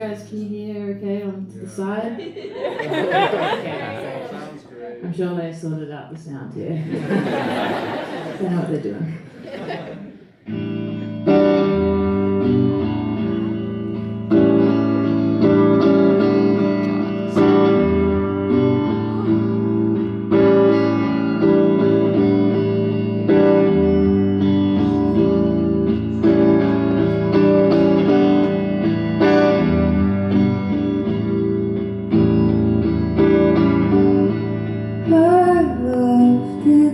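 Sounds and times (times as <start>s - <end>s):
guitar chords ringing: 10.5s - 36.9s.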